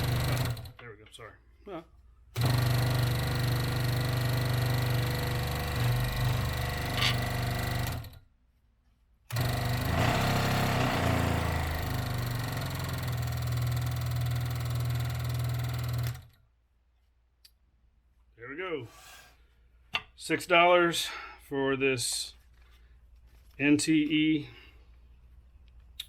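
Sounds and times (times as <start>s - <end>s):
scroll saw running: 0.0s - 0.7s, 2.4s - 8.2s, 9.3s - 16.4s.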